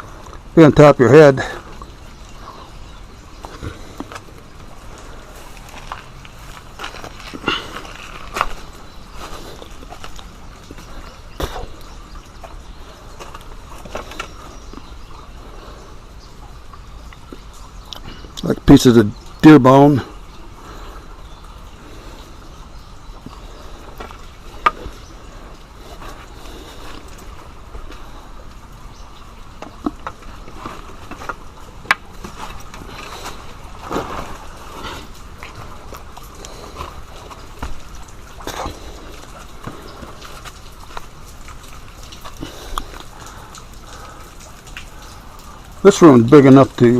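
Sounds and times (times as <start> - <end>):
footsteps crunching on rocky ground: 3.4 - 11.8.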